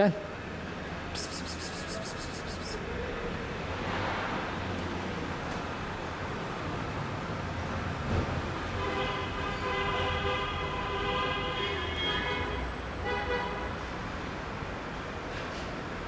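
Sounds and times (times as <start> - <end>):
traffic noise: 0.0 - 16.0.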